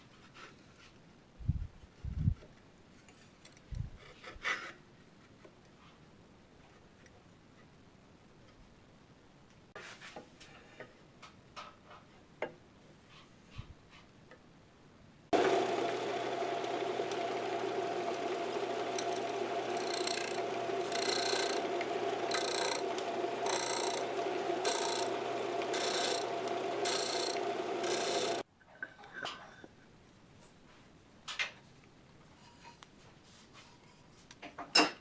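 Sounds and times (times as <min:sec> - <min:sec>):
electric power tool running: 0:15.3 - 0:28.4
tool scraping wood: 0:15.4 - 0:28.4.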